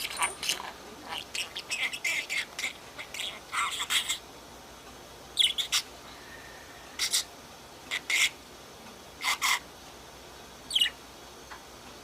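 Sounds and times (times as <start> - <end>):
budgerigar chirping: 1.1 - 4.2, 5.4 - 5.9, 7.0 - 7.3, 7.9 - 8.4, 9.2 - 9.6, 10.7 - 11.0.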